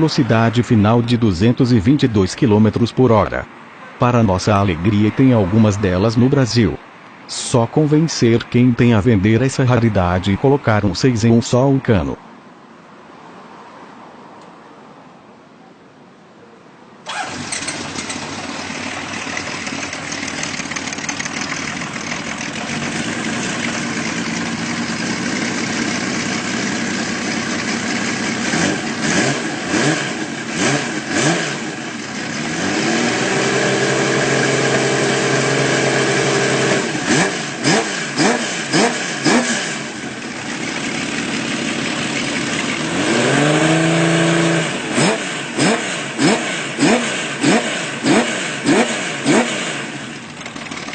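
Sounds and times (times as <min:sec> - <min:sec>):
motorcycle engine revving: 0:17.1 - 0:50.9.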